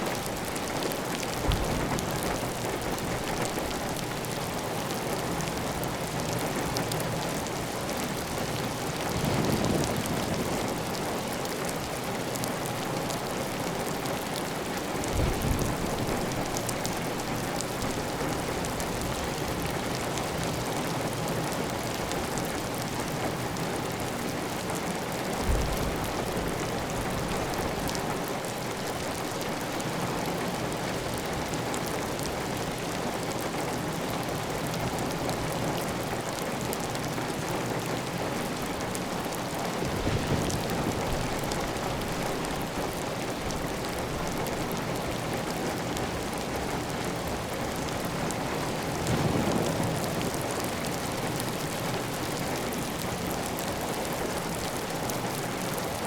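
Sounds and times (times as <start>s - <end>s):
heavy rain on a tile roof: 0.0s - 56.0s.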